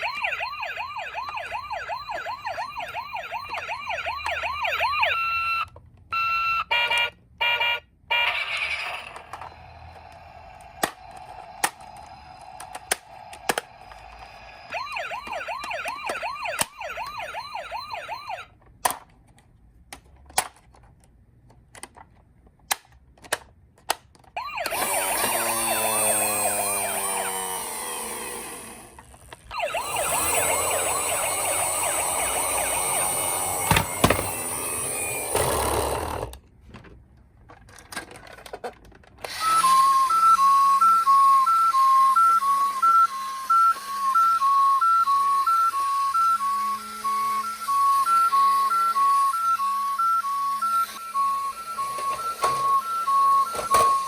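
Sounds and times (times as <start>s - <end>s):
toy electronic siren wailing: 0.0s - 18.5s, 24.4s - 28.9s, 29.5s - 35.8s, 39.2s - 54.0s
plastic toys clicking: 10.2s - 14.4s, 18.6s - 25.3s, 37.4s - 39.4s.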